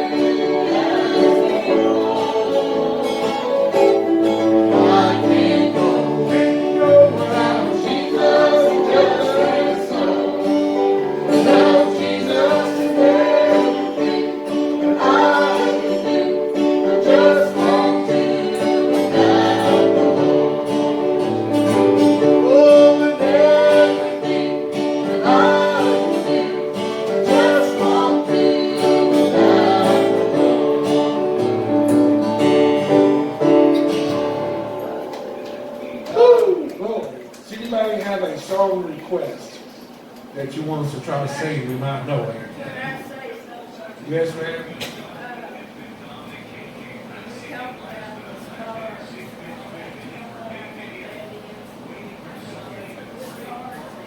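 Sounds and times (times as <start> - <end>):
person singing gospel song: 0.0 - 31.6
guitar accompaniment: 0.0 - 37.5.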